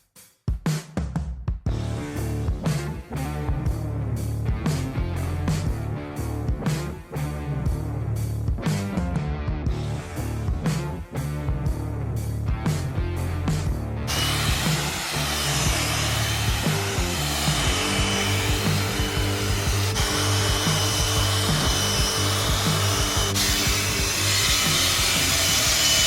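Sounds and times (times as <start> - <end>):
background music with steady beat: 0.0 - 26.0
loud rushing noise: 14.1 - 26.0.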